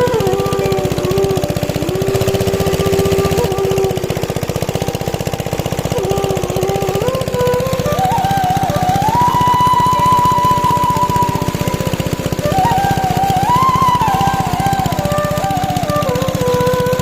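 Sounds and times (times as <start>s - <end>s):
flute-like melody: 0.0s - 17.0s.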